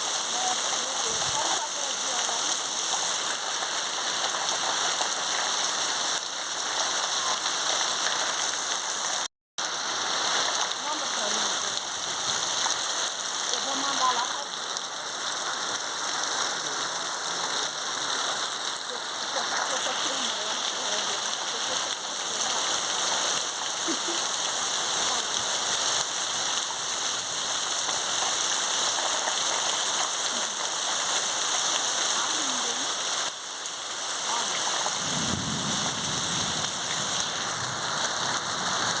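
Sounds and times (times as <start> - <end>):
heavy rain falling: 0.0 - 39.0
low rumble of thunder: 35.0 - 38.9.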